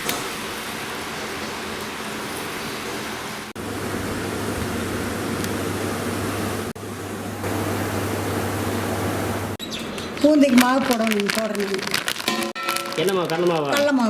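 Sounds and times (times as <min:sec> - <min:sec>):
hot oil sizzling: 0:00.0 - 0:09.6.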